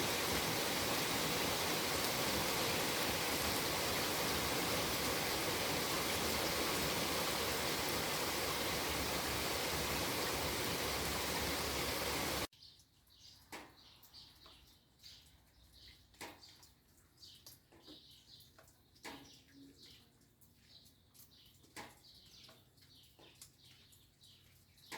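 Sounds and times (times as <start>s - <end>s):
steady rain falling: 0.0s - 12.5s
small birds chirping: 0.0s - 24.9s.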